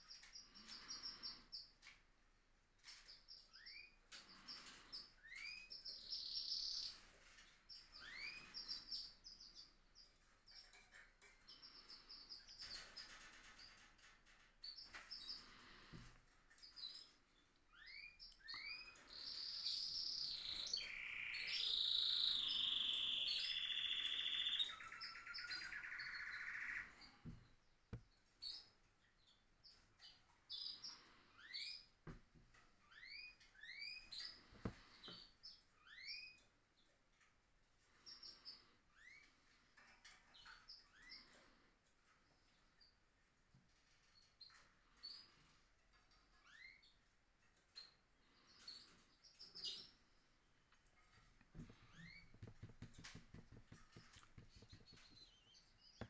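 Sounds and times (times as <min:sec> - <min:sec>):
canaries chirping and singing: 0:00.0 - 0:01.9, 0:02.8 - 0:27.4, 0:37.8 - 0:43.0, 0:43.8 - 0:50.0, 0:51.1 - 0:56.0.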